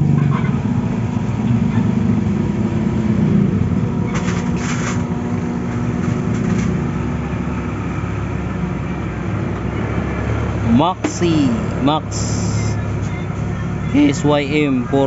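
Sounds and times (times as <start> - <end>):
vehicle engine running: 0.0 - 15.0
clattering rattles: 4.1 - 6.9.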